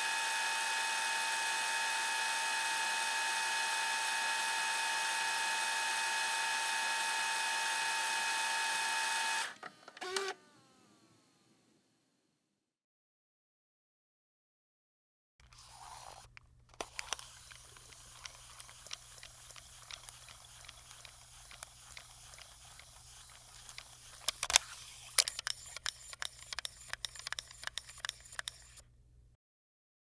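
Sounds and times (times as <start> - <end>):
tape mechanism clicks: 15.4 - 28.8
tape mechanism hum and hiss: 15.4 - 29.0.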